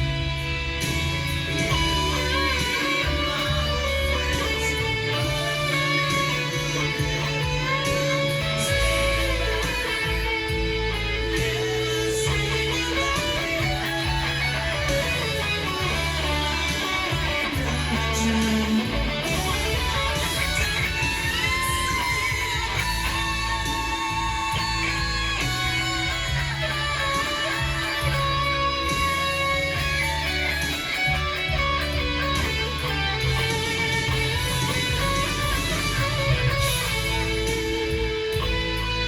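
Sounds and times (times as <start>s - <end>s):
backing track with bass: 0.0s - 39.0s
electric guitar melody: 0.0s - 39.0s.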